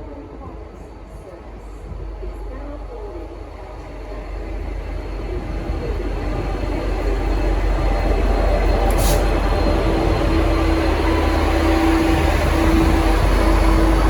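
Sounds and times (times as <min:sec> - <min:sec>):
diesel locomotive engine rumble: 0:00.0 - 0:14.0
brief hiss: 0:08.9 - 0:09.3.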